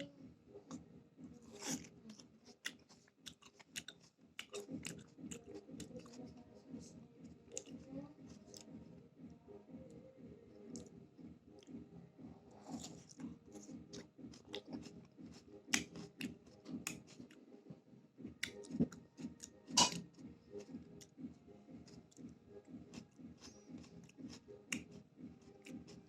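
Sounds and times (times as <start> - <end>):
person chewing tomato: 1.4 - 8.8, 10.7 - 10.9, 11.6 - 17.4, 18.3 - 21.2, 21.8 - 26.0.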